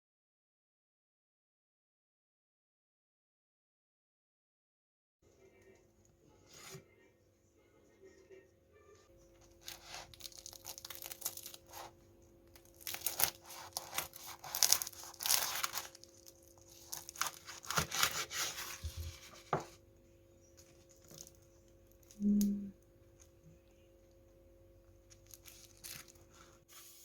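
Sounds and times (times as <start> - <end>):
faint steady hum: 5.2 - 27.0
crackling tearing rustles: 9.4 - 19.3, 25.1 - 26.6.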